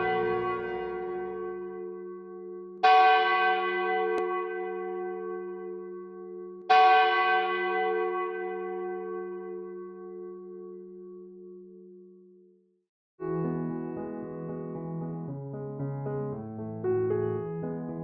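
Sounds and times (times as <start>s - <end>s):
church bell tolling: 0.0s - 12.2s.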